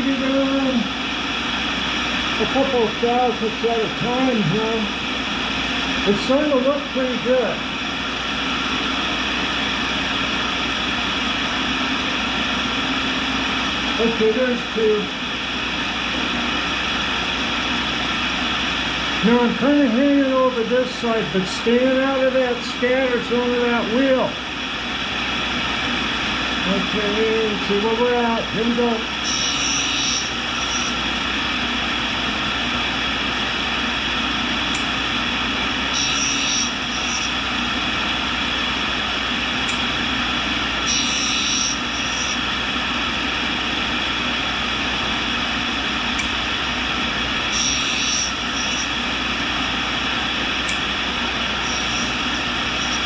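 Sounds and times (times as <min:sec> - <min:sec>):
grinding wheel running: 0:26.5 - 0:45.1, 0:45.7 - 0:53.0.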